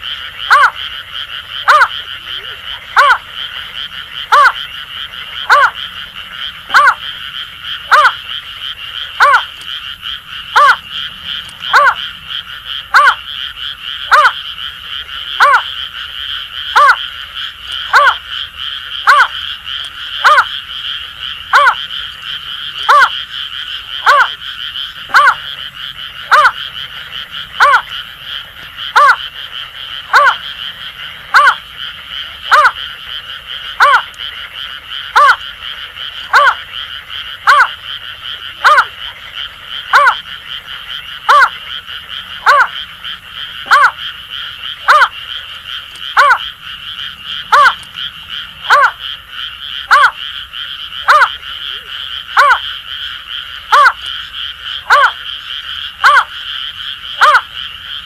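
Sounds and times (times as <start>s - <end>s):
frogs chorus: 0.0s - 58.0s
bird hooting call: 7.9s - 8.2s, 9.2s - 9.6s, 10.6s - 10.9s, 11.7s - 12.0s, 12.9s - 13.2s, 21.5s - 21.8s, 25.1s - 25.4s, 27.6s - 27.9s, 28.9s - 29.2s, 30.1s - 30.4s, 31.3s - 31.6s, 47.4s - 47.9s.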